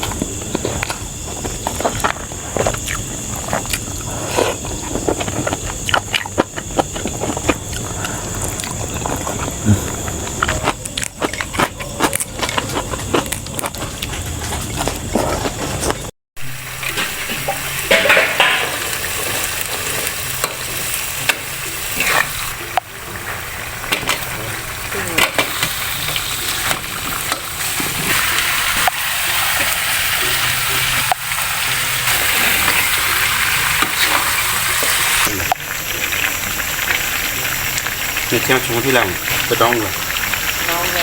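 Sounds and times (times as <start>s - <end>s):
food sizzling in a pan: 16.4s - 41.0s.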